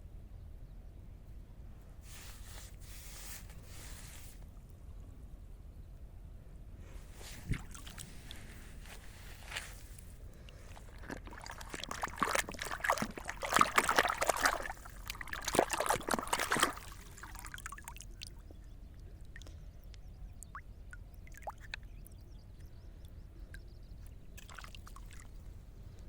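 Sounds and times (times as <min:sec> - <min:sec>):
water splashing and pouring: 0:07.3 - 0:08.3, 0:10.5 - 0:18.4, 0:24.4 - 0:25.3
water trickling: 0:07.4 - 0:22.2, 0:24.4 - 0:25.4.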